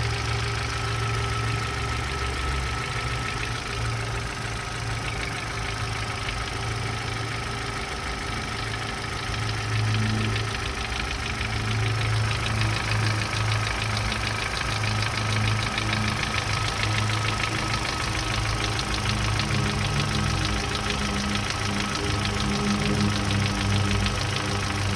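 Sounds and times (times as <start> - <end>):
petrol engine knocking clatter: 0.0 - 24.9.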